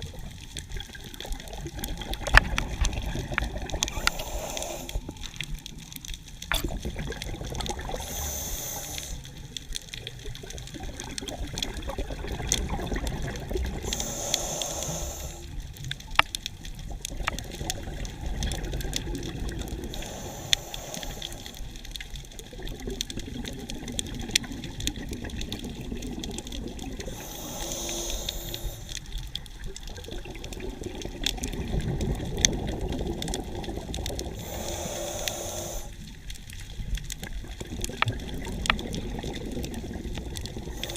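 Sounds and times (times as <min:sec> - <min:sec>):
exhaled bubbles rushing: 0:00.0 - 0:05.8, 0:06.4 - 0:08.5, 0:10.0 - 0:14.0, 0:16.7 - 0:20.0, 0:21.3 - 0:28.0, 0:29.4 - 0:34.6, 0:36.1 - 0:40.9
small clicks underwater: 0:00.0 - 0:40.9
underwater wash: 0:00.0 - 0:40.9
regulator hissing inhalations: 0:03.9 - 0:05.1, 0:08.0 - 0:09.3, 0:13.8 - 0:15.6, 0:19.9 - 0:21.7, 0:27.0 - 0:29.1, 0:34.4 - 0:36.0.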